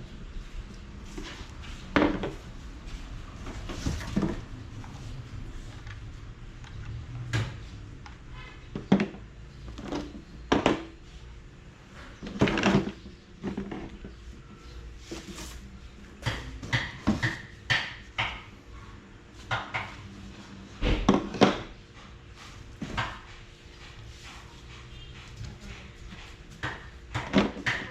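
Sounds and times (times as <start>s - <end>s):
hard objects clattering: 12.2s - 14.2s.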